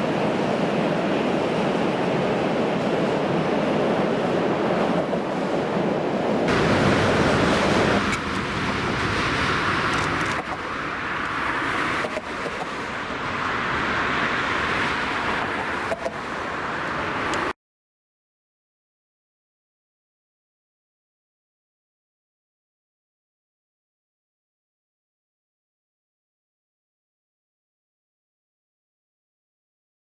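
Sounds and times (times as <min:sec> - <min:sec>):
electric freight train rumbling past: 0:00.0 - 0:17.5
train wheel clicks: 0:09.8 - 0:10.6, 0:11.2 - 0:12.8, 0:16.8 - 0:17.5.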